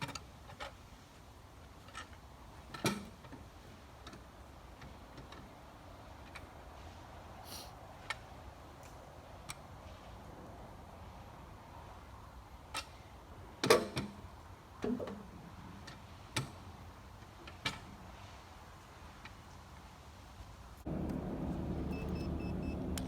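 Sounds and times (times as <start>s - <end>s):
low steady hum: 20.9s - 23.0s.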